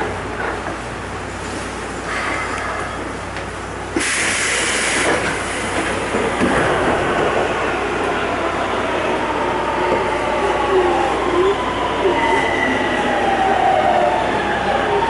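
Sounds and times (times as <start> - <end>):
train underfloor rumble and hum: 0.0 - 15.0
compressed-air hiss: 4.0 - 5.7.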